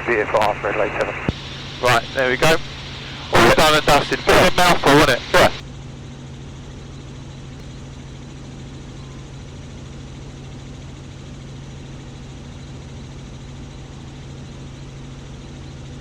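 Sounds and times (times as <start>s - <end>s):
helicopter cabin hum and hiss: 0.0s - 5.6s.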